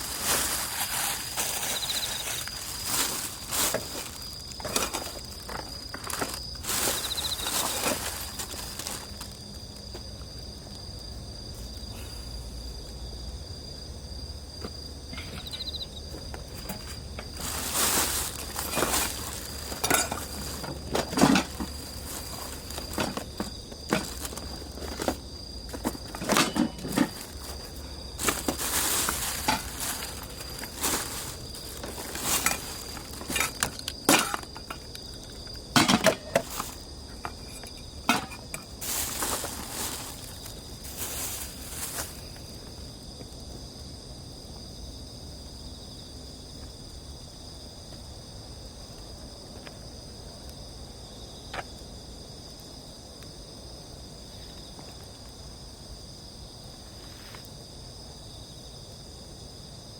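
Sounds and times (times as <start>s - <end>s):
insects chirring: 0.0s - 59.9s
campfire crackling: 16.1s - 25.8s, 27.2s - 43.6s.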